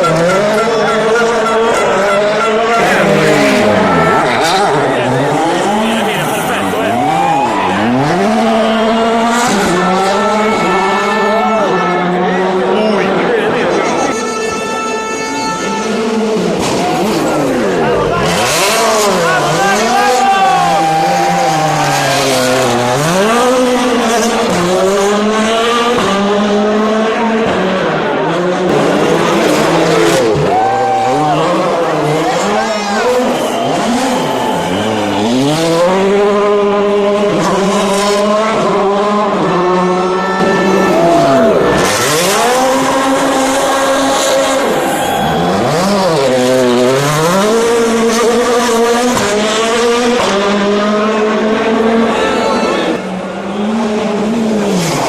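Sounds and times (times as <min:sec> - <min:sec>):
rally car engine revving: 0:00.1 - 0:11.1, 0:15.7 - 0:52.2.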